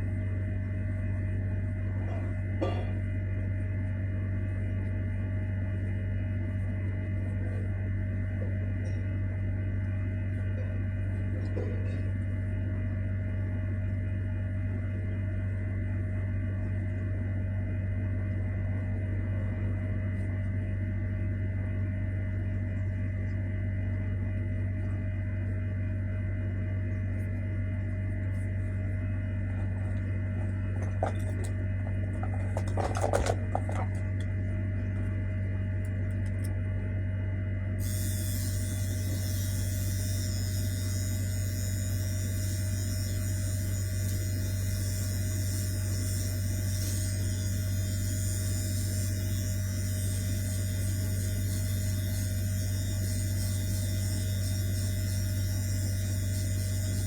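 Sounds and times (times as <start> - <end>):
hair dryer running: 37.8 - 57.0.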